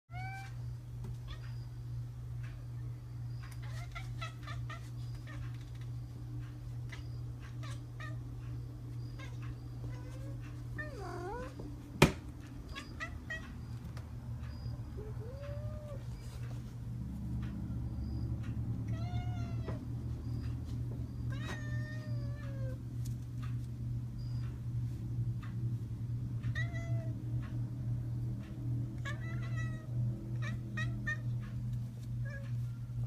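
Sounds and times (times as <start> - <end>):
cat meowing: 0.1 - 0.6, 9.2 - 11.6, 18.9 - 19.9, 21.3 - 22.8
steady low hum: 0.1 - 33.0.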